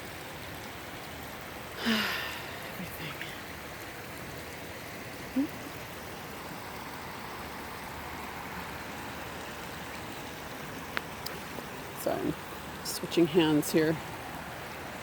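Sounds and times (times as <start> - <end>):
creek water running over rocks: 0.0 - 15.0.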